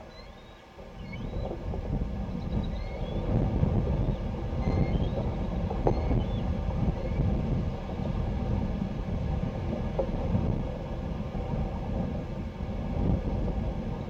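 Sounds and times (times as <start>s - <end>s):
bird chirps: 0.0s - 1.5s
wind buffeting microphone: 0.0s - 14.0s.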